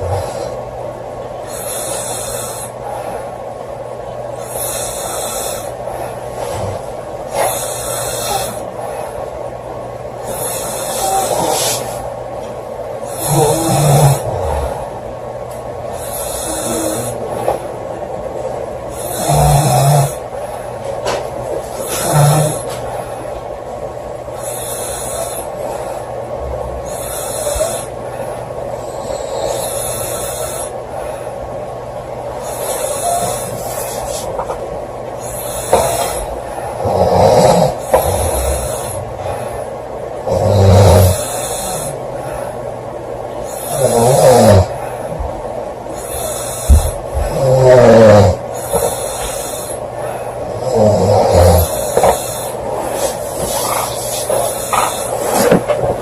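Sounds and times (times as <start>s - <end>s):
woman snoring loudly: 7.4s - 8.7s, 10.2s - 12.0s, 13.0s - 14.9s, 16.0s - 17.6s, 18.9s - 20.3s, 21.8s - 22.8s, 26.4s - 28.0s, 28.8s - 30.8s, 32.4s - 34.0s, 35.2s - 39.6s, 40.2s - 42.4s, 43.4s - 44.9s, 46.0s - 49.8s, 50.5s - 55.6s
quiet breath: 24.3s - 31.8s, 44.7s - 47.3s, 48.5s - 50.5s.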